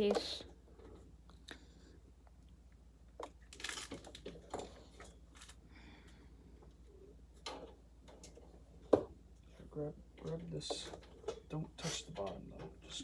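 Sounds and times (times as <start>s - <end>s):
low steady hum: 0.0s - 13.0s
parts and cables rustling: 3.2s - 6.2s.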